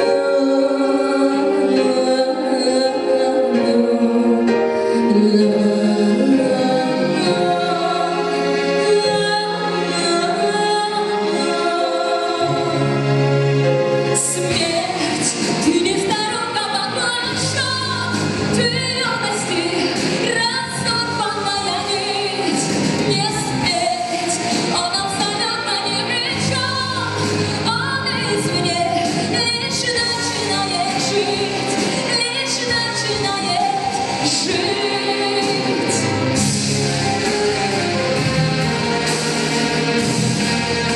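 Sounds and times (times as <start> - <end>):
woman singing: 0.0 - 13.0, 14.2 - 36.4
instrumental accompaniment: 0.0 - 40.9.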